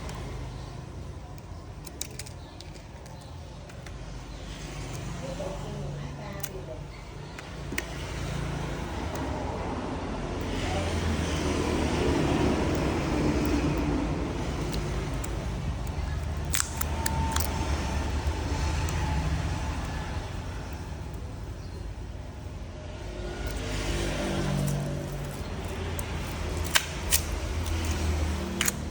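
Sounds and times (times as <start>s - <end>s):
low rumble of road traffic: 0.0s - 28.9s
sharp clicks: 12.7s - 19.2s, 23.4s - 28.9s.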